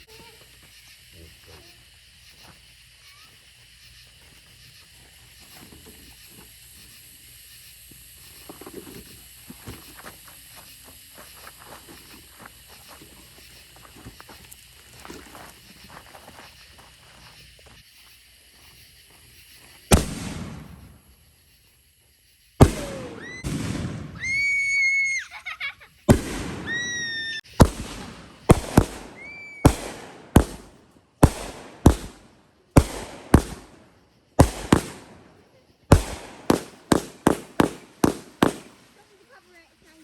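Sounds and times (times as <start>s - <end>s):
fireworks whistle: 0.0s - 4.1s, 22.6s - 39.6s
fireworks bangs: 19.8s - 21.3s, 22.6s - 25.4s, 26.0s - 39.6s.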